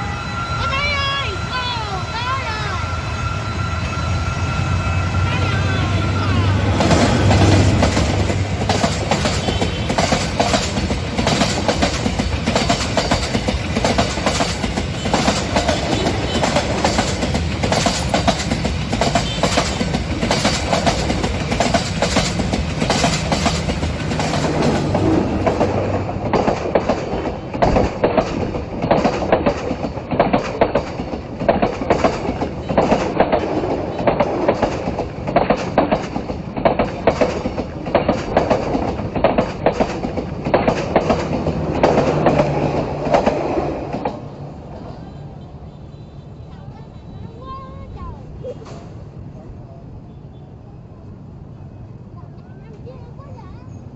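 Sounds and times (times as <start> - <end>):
train wheels clattering on rails: 0.0 - 45.0.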